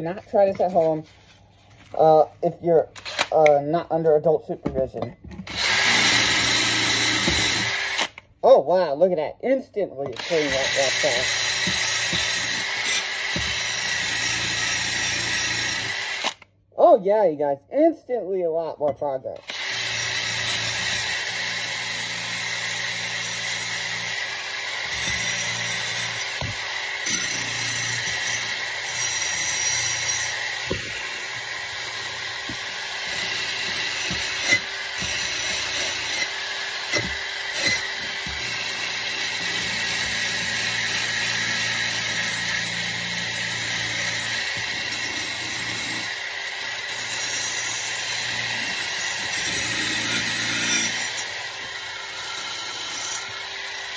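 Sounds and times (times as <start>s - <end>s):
drill motor hum: 5.4s - 8.2s, 10.2s - 16.4s, 19.5s - 53.9s.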